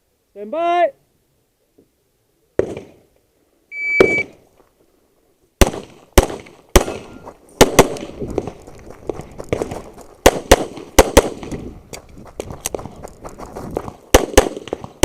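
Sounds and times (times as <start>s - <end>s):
shot timer start beep: 3.7s - 4.3s, 6.8s - 7.3s
handgun shots: 5.6s - 8.0s.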